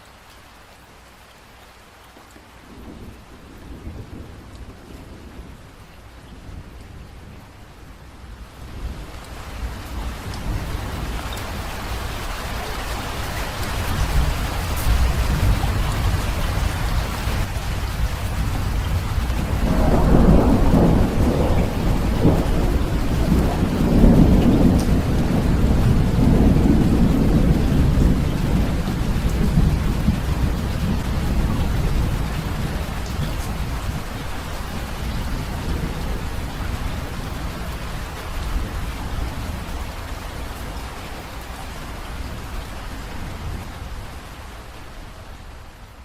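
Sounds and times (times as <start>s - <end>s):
rain: 0.0s - 46.0s
rolling thunder: 2.7s - 11.7s, 13.8s - 39.8s.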